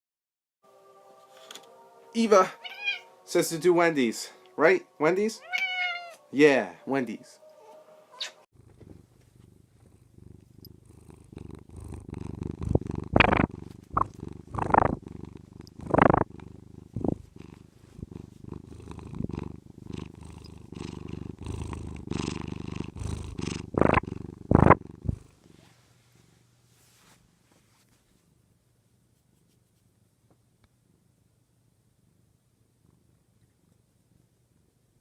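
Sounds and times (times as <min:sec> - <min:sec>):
cat purring: 0:08.6 - 0:26.5, 0:30.7 - 0:34.9.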